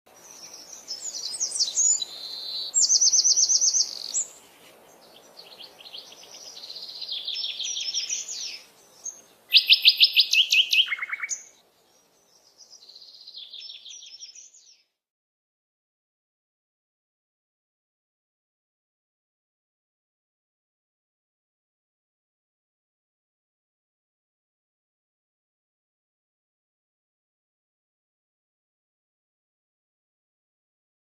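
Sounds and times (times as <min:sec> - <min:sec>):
songbird singing: 0:00.1 - 0:15.0.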